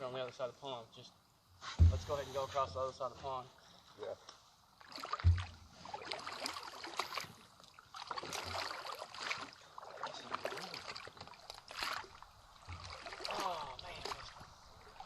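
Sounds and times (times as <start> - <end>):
paddles splashing through water: 4.8 - 15.0.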